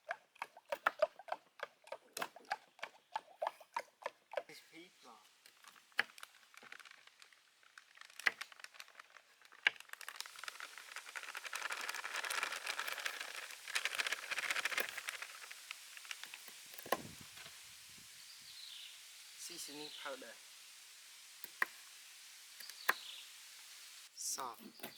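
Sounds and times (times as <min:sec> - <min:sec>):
flour crackly rustle: 0:04.6 - 0:20.5.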